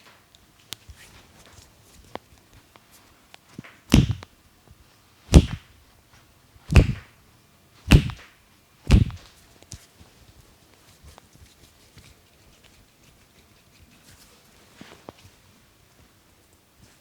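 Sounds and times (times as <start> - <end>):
hand slaps on bare skin: 3.9 - 4.2, 5.3 - 5.6, 6.7 - 7.0, 7.9 - 8.2, 8.9 - 9.2.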